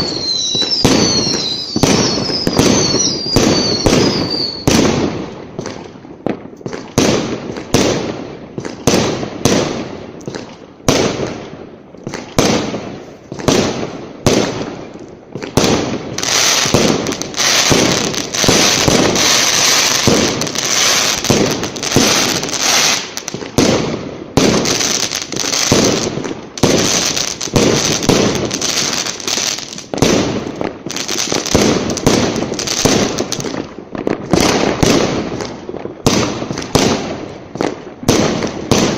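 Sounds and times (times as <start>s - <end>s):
fireworks bangs: 0.0s - 38.9s
fireworks crackling: 0.0s - 38.9s.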